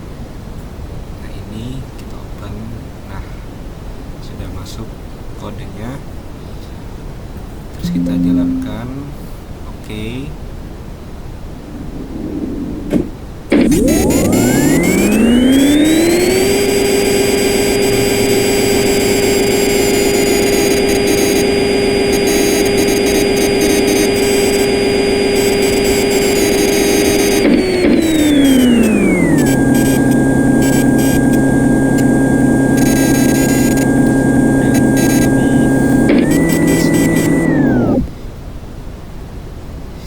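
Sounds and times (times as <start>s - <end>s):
machine whine: 7.8s - 8.9s, 13.5s - 38.1s
machine hum: 13.5s - 38.1s.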